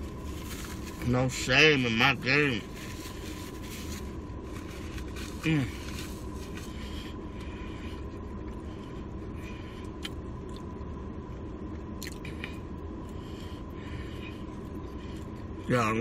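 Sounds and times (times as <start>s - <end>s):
low background hum: 0.0s - 16.0s
person chewing: 9.8s - 10.7s, 12.0s - 12.6s.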